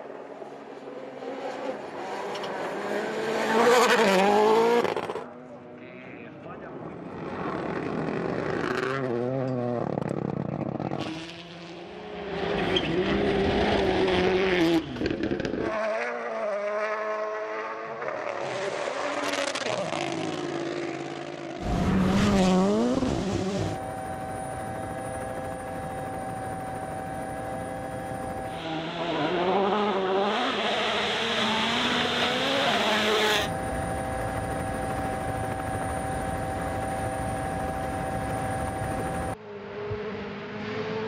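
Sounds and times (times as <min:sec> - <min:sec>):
rally car engines revving: 0:00.2 - 0:05.6, 0:06.7 - 0:23.8, 0:27.3 - 0:33.5
steady high tone: 0:23.6 - 0:28.8, 0:32.9 - 0:39.4.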